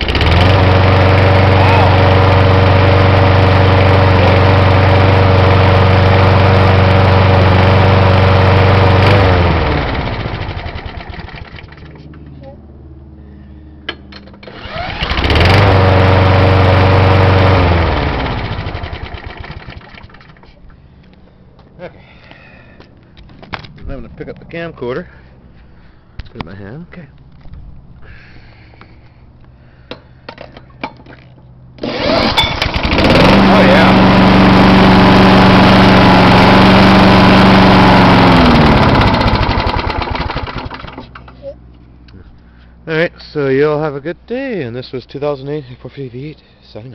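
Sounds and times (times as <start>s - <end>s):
lawnmower engine revving: 0.0s - 12.2s, 14.4s - 20.5s, 31.8s - 41.3s.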